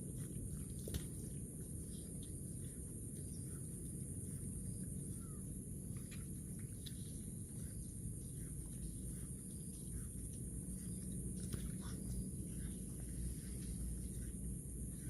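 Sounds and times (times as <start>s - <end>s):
low rumble: 0.0s - 15.0s.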